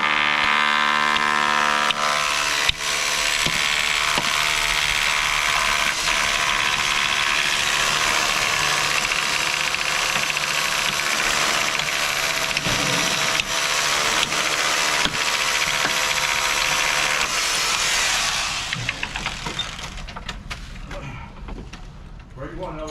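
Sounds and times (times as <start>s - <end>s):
machine motor running: 0.0s - 20.1s
sharp knocks: 3.4s - 4.6s, 9.9s - 17.4s.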